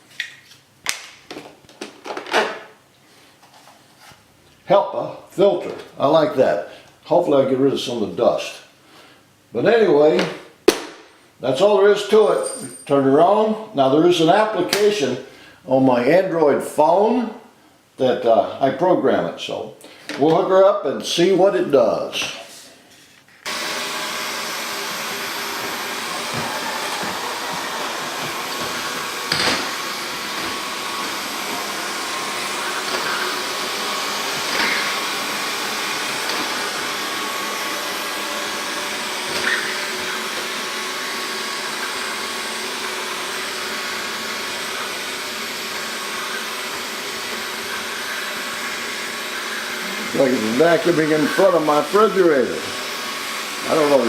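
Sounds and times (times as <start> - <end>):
robot vacuum cleaner humming: 23.5 - 54.0.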